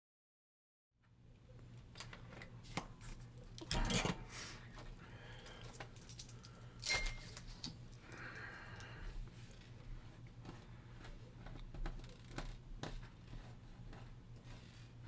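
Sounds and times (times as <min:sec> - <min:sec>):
rustling or scraping: 0:09.1 - 0:15.0.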